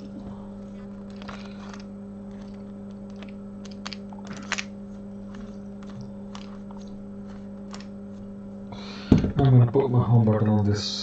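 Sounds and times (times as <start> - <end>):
electrical hum: 0.0 - 11.0
small tools clicking and tapping: 5.3 - 7.9.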